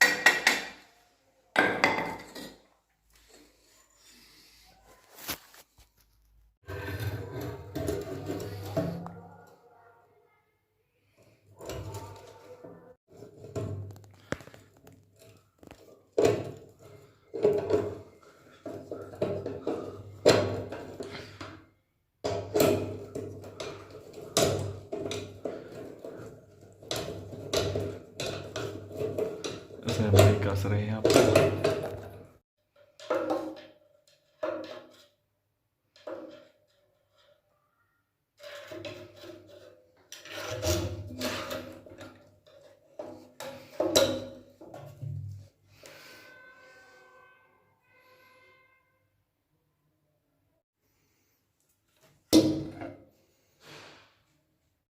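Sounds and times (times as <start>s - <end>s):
metal tools knocking and clanking: 0.0s - 0.8s
tools scraping and knocking metal: 0.0s - 0.9s, 1.6s - 4.3s, 6.6s - 9.2s, 11.5s - 21.6s, 22.2s - 35.2s, 35.9s - 37.4s, 38.4s - 46.0s.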